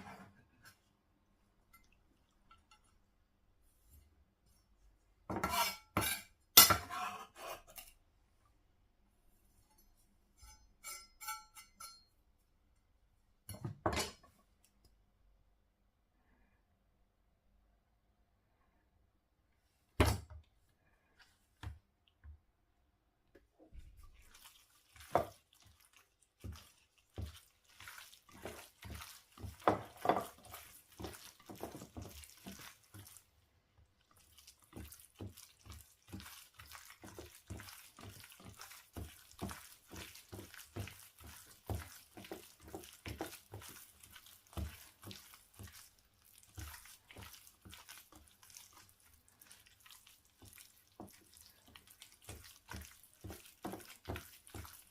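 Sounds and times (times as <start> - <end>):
water running at sink: 23.4 - 54.9.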